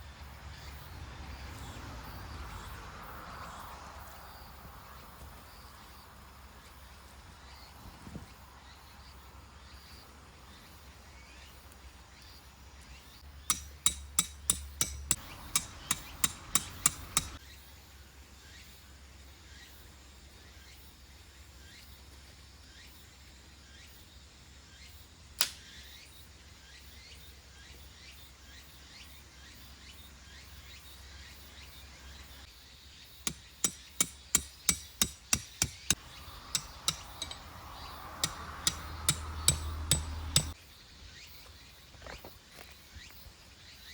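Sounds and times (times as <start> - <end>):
hammer blows: 13.5 - 17.4, 33.3 - 40.6.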